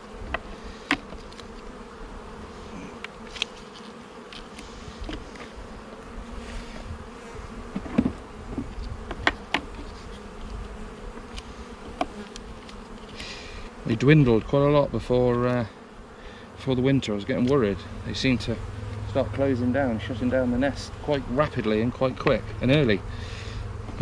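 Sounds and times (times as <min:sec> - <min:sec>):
honeybees humming: 0:00.0 - 0:24.0
sharp clicks and knocks: 0:07.7 - 0:09.9.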